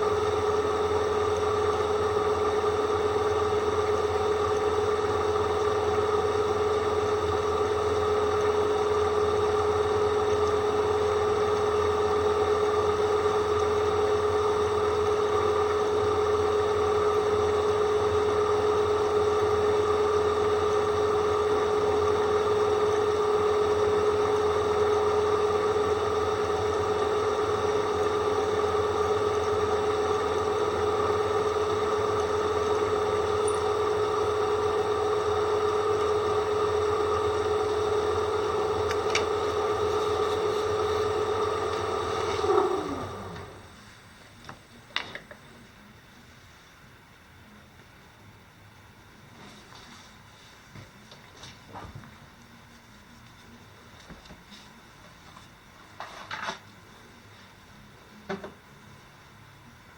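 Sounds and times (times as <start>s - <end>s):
drill bit whistling: 32.3s - 36.6s.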